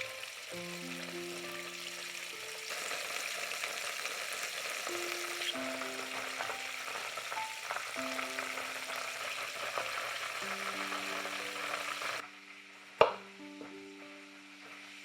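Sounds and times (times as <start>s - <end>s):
background music: 0.0s - 3.7s, 4.6s - 15.0s
food sizzling in a frying pan: 0.0s - 15.0s.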